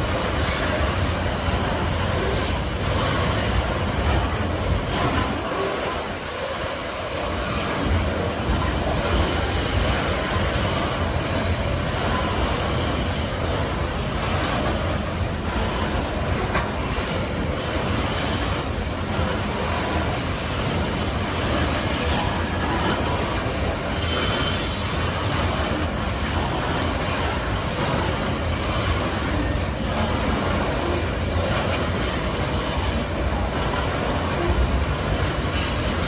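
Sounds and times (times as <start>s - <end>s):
train wheels rumbling and clacking: 0.0s - 36.0s
high wheel squeal: 21.2s - 29.8s.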